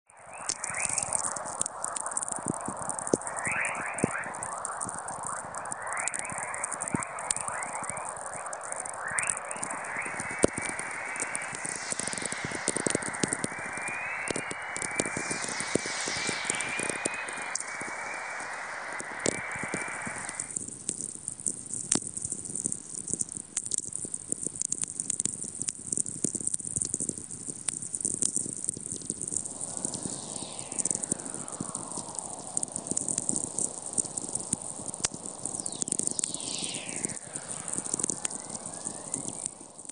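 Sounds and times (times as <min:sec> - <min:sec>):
whistler falling in pitch: 0:00.1 - 0:20.5, 0:29.4 - 0:33.2, 0:35.4 - 0:39.9
crackle of sferics: 0:00.1 - 0:39.9
short rising tone: 0:00.3 - 0:20.5, 0:29.2 - 0:33.0, 0:35.7 - 0:39.5.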